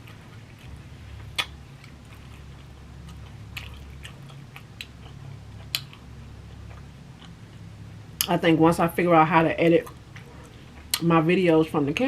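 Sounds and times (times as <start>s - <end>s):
person chewing food: 0.0s - 7.6s.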